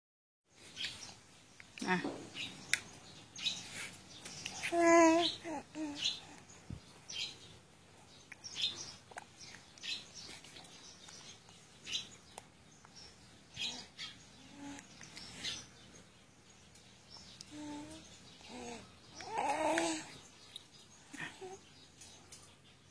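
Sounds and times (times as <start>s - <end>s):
bird chirping: 0.5s - 22.9s.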